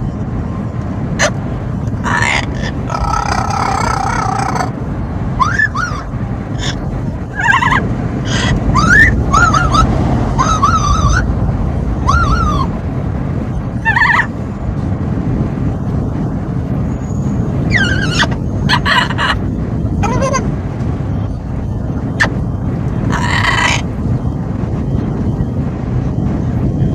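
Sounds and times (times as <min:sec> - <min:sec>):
moving car rumble: 0:00.0 - 0:26.9
wind: 0:00.0 - 0:26.9
parrot squawking: 0:02.0 - 0:04.7, 0:05.4 - 0:11.3, 0:12.0 - 0:12.7, 0:13.8 - 0:14.3, 0:17.7 - 0:19.4, 0:23.1 - 0:23.8.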